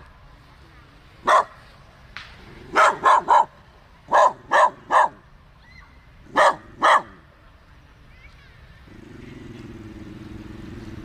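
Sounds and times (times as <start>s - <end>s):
dog barking: 1.2s - 1.6s, 2.7s - 3.5s, 4.1s - 5.2s, 6.3s - 7.2s.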